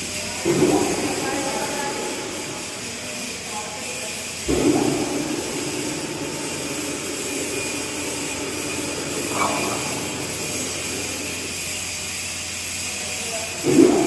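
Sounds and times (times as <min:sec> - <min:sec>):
straw baler mechanical drone: 0:00.0 - 0:14.0.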